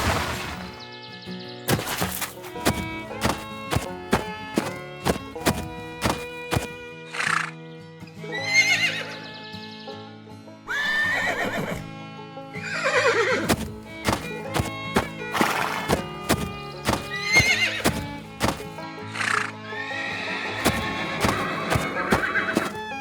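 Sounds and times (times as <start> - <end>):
hoof clip-clops: 1.7 - 6.8, 13.4 - 18.8, 20.6 - 23.0.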